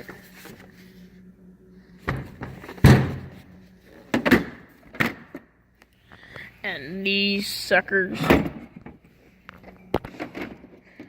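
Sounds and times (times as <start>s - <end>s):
steel drawers clunking shut: 8.1s - 8.7s.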